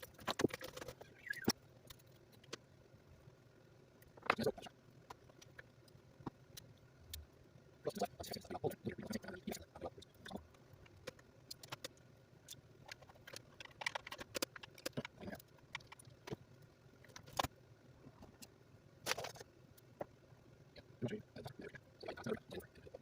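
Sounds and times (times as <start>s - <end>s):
clatter of small parts and tools: 0.0s - 2.6s, 12.8s - 16.4s, 18.3s - 19.5s.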